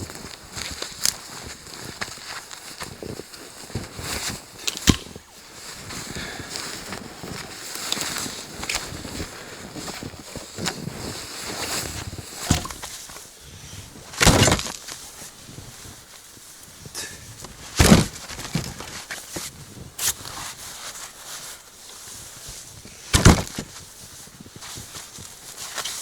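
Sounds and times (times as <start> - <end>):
firewood cracking and snapping: 4.6 - 5.3, 11.8 - 13.2
loud wood crunch: 4.6 - 5.4, 11.9 - 13.2
wood scraping: 10.7 - 13.7.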